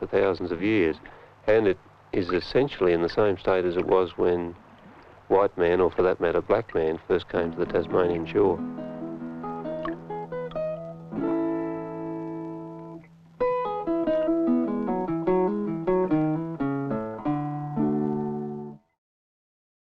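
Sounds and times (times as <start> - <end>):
guitar music: 7.3 - 18.8.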